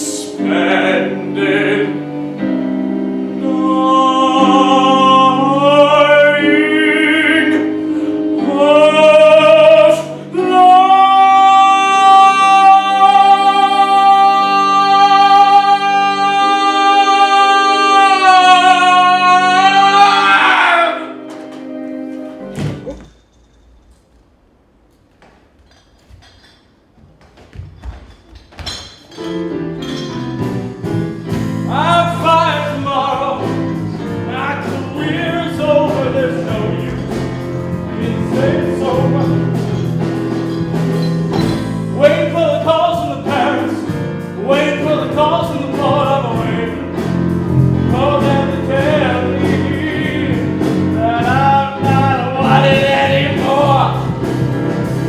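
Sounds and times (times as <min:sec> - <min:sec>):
person singing: 0:00.0 - 0:02.7, 0:03.3 - 0:23.0, 0:31.6 - 0:40.1, 0:41.8 - 0:54.5
musical accompaniment: 0:00.0 - 0:25.1, 0:28.0 - 0:55.0.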